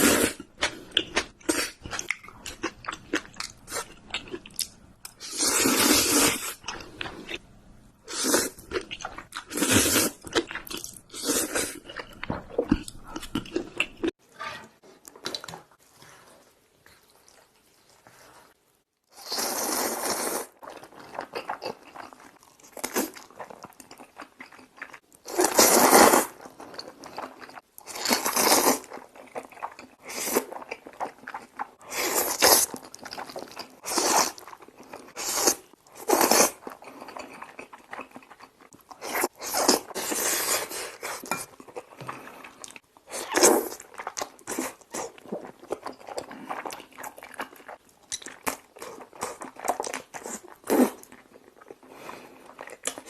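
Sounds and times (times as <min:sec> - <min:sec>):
loud noodle slurps: 0:19.2 - 0:20.6.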